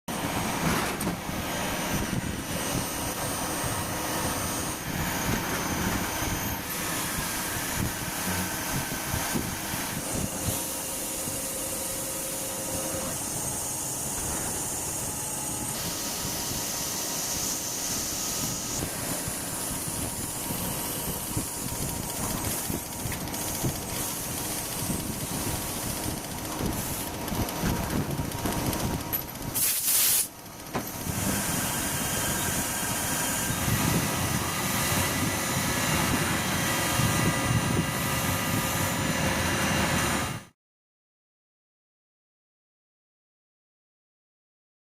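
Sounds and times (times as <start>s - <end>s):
lathe running: 1.3s - 29.6s.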